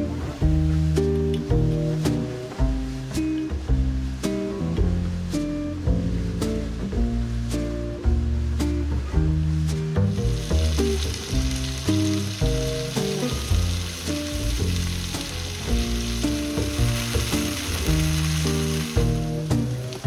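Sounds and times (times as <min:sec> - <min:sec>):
background music with bass line: 0:00.0 - 0:20.0
food frying in a pan: 0:10.0 - 0:20.0.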